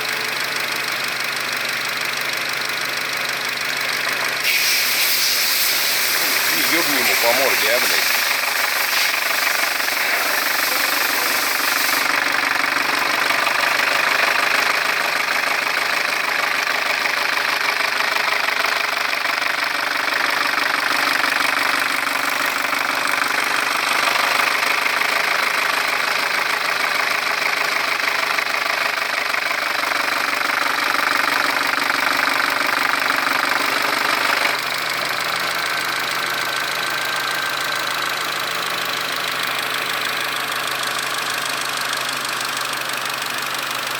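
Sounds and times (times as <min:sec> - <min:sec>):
car engine running: 0:00.0 - 0:04.5, 0:05.6 - 0:43.9
engine extraneous noise: 0:04.0 - 0:14.8.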